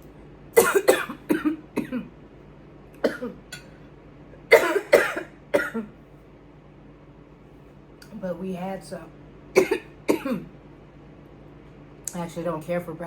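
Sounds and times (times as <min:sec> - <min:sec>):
woman coughing: 0:00.6 - 0:02.1, 0:03.0 - 0:03.7, 0:04.5 - 0:06.0, 0:09.6 - 0:10.6.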